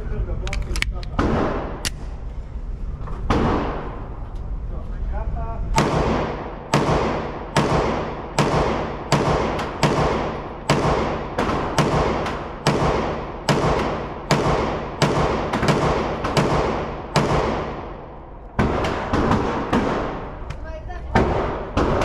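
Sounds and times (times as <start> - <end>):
pistol shots echoing indoors: 5.7 - 20.5, 21.1 - 22.0.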